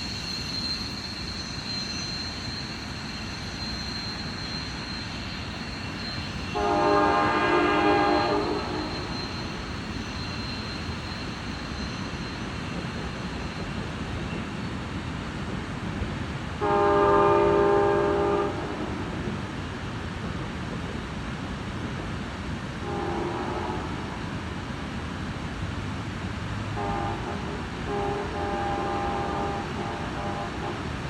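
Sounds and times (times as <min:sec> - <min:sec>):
train noise: 0:00.0 - 0:31.0
train horn blasts: 0:06.5 - 0:09.5, 0:16.6 - 0:19.1, 0:22.8 - 0:24.2, 0:26.7 - 0:31.0.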